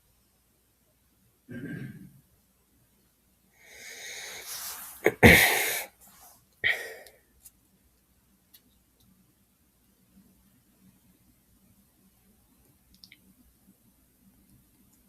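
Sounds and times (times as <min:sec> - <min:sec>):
person sneezing: 0:04.4 - 0:06.0.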